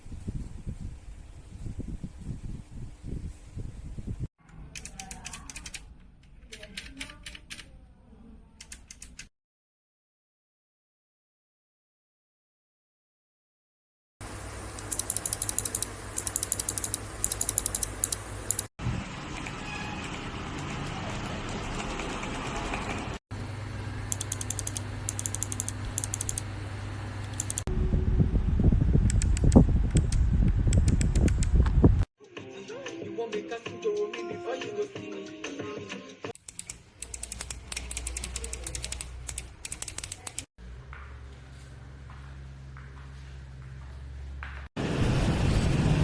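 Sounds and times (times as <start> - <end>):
clicky keyboard typing: 4.8 - 5.9, 6.5 - 7.7, 8.6 - 9.3, 14.8 - 18.7, 24.1 - 26.4, 27.3 - 27.7, 36.4 - 40.5
low rumble: 27.7 - 30.8, 44.8 - 46.0.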